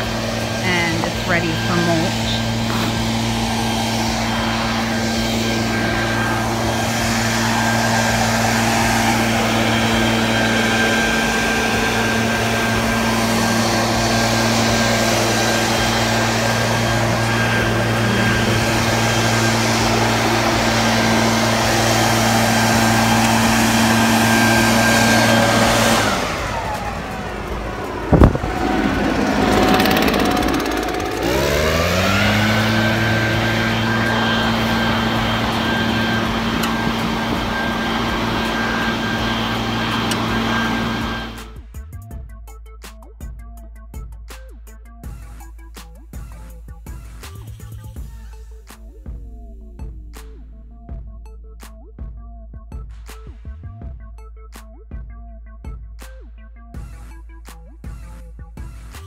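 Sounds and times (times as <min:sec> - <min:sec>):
small petrol engine running: 0:00.0 - 0:41.6.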